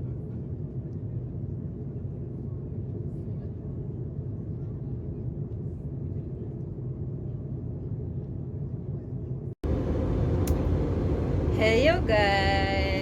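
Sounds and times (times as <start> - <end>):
airliner cabin engine rumble: 9.6 - 13.0.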